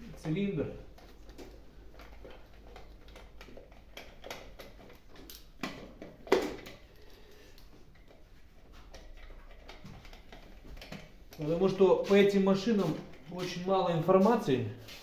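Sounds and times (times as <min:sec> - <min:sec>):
light handling clicks and knocks: 0:00.0 - 0:11.6.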